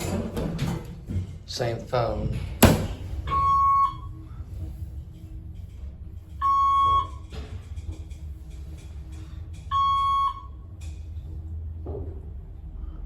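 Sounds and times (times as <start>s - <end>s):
low steady hum: 0.0s - 13.0s
elevator signal beep: 3.3s - 4.2s, 6.4s - 7.3s, 9.6s - 10.8s.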